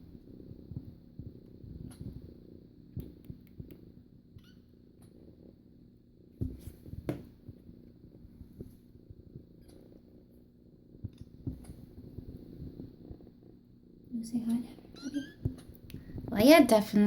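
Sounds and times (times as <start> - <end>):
kitten purring: 0.0 - 16.3
soft thumps: 6.4 - 9.9, 11.0 - 13.2.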